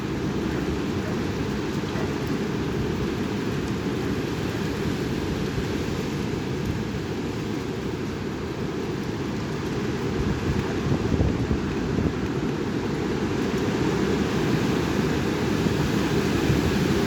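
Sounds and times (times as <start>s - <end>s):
strong wind on microphone: 10.0s - 17.0s.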